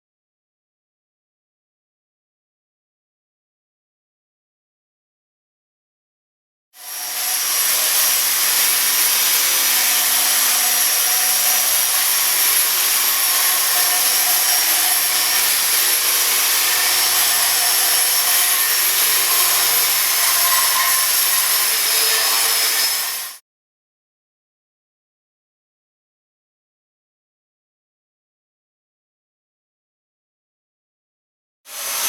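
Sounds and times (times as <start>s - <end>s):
angle grinder grinding: 6.8s - 23.4s.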